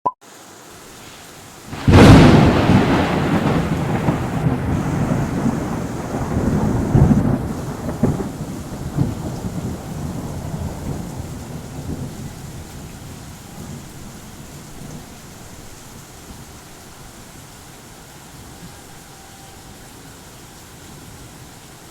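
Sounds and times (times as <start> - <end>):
steady rain hissing: 0.2 - 21.9
thunder rumbling: 1.7 - 17.0.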